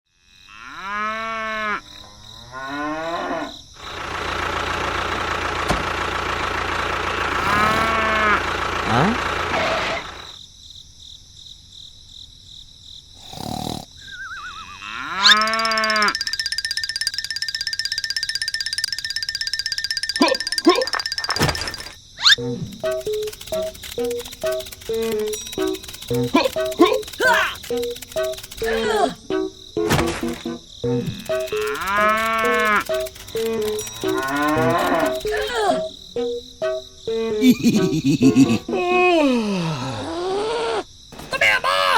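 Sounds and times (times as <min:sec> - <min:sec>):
cricket-like chirping: 0:00.1 - 0:05.2, 0:10.1 - 0:41.9
cow mooing: 0:00.6 - 0:03.6, 0:07.4 - 0:08.5, 0:14.1 - 0:16.2, 0:31.7 - 0:32.9, 0:34.1 - 0:35.2
falling wobbling whistle: 0:14.0 - 0:22.4
warbling pitch glides: 0:14.0 - 0:22.4.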